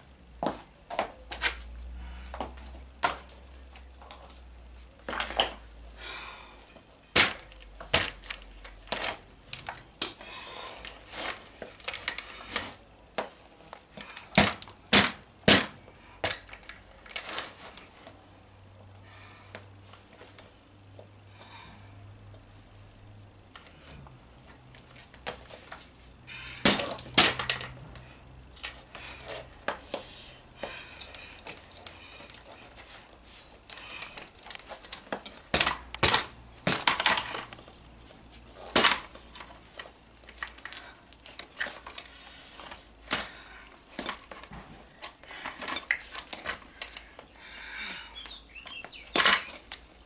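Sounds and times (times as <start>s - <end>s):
toy car being smashed apart: 7.1s - 10.2s, 14.3s - 17.5s, 26.6s - 27.8s, 34.9s - 37.5s, 38.7s - 39.5s, 49.1s - 49.8s.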